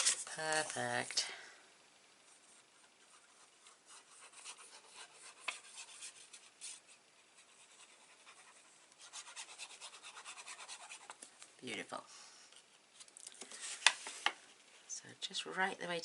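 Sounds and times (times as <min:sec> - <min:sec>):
fingers rubbing paper: 0:07.4 - 0:11.1.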